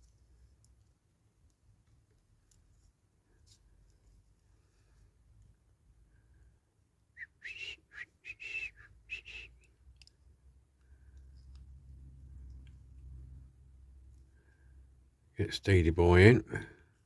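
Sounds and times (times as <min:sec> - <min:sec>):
short whistled notes: 0:07.2 - 0:09.7.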